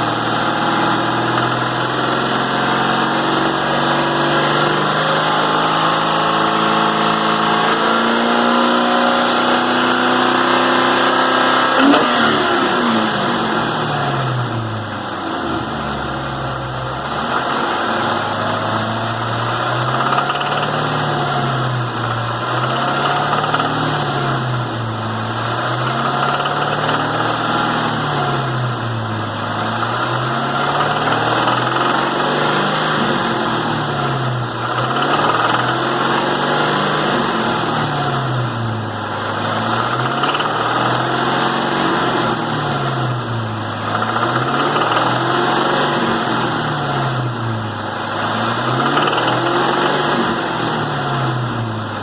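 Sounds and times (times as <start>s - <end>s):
car engine revving: 0.0s - 52.0s
engine knocking: 1.1s - 2.0s, 19.5s - 24.8s, 25.5s - 27.7s, 29.6s - 32.7s, 34.4s - 37.0s, 39.0s - 41.7s, 43.2s - 51.0s.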